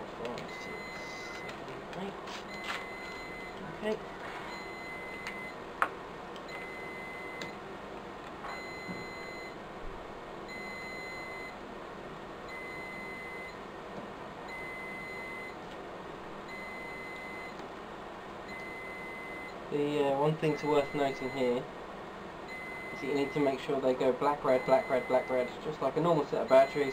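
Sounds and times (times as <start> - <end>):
electronic alarm beeping: 0.5 - 1.6, 2.5 - 3.6, 4.5 - 5.6, 6.5 - 7.6, 8.5 - 9.6, 10.5 - 11.6, 12.5 - 13.6, 14.5 - 15.6, 16.5 - 17.6, 18.5 - 19.6, 20.4 - 21.6, 22.5 - 23.7, 24.4 - 25.6, 26.4 - 26.9.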